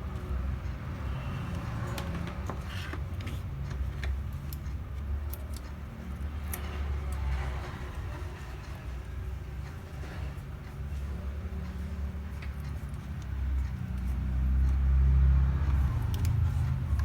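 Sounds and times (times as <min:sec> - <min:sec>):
light clicks of laptop parts: 0:01.4 - 0:07.8, 0:11.7 - 0:17.0.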